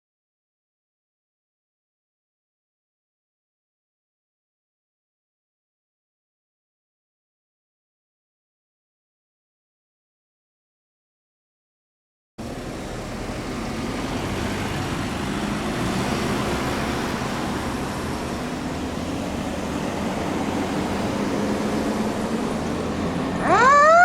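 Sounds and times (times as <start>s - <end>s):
low engine hum: 12.4s - 24.0s
road traffic rushing: 12.4s - 24.0s.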